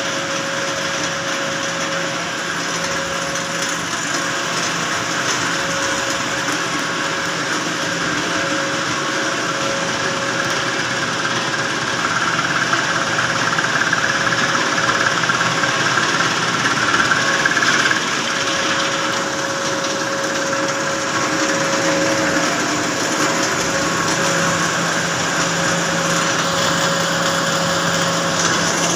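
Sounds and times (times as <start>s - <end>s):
machinery rushing and whining: 0.0s - 28.9s.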